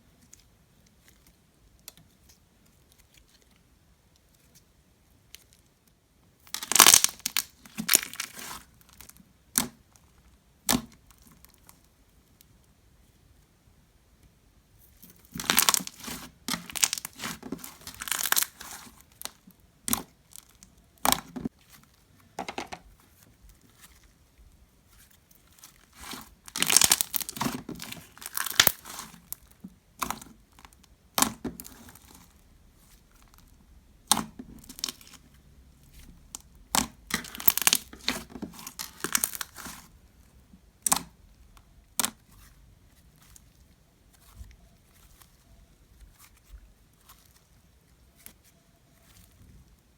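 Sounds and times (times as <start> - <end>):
slime crackling and popping: 6.4 - 9.9, 15.2 - 21.6, 25.0 - 35.3, 35.9 - 40.0, 40.8 - 41.2.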